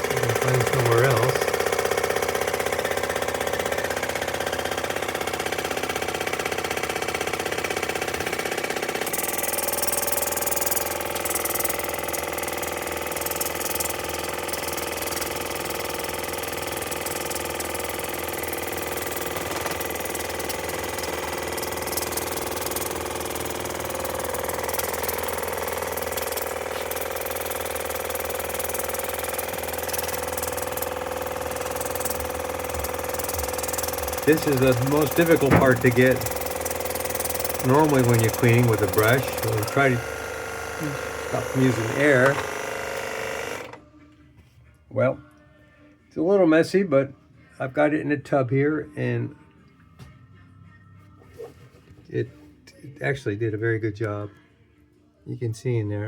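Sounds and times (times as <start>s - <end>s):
pump motor buzzing hum: 0.0s - 43.9s.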